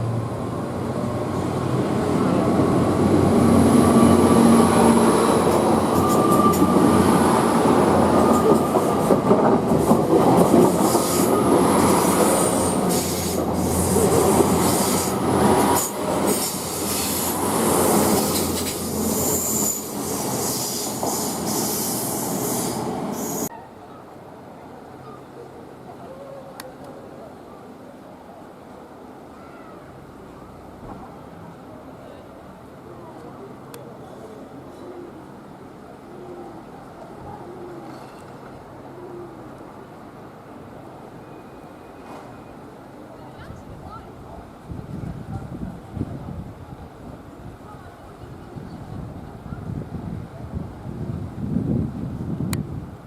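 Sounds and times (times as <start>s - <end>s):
train wheels rumbling on rail: 0.0s - 23.5s.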